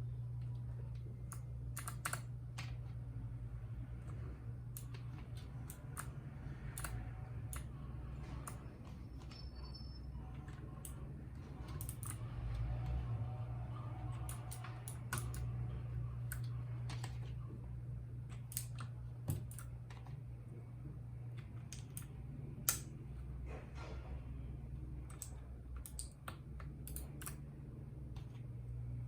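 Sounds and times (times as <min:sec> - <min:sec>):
mechanical keyboard clacking: 0:01.2 - 0:02.9, 0:11.6 - 0:12.2, 0:14.2 - 0:15.5, 0:25.0 - 0:27.4.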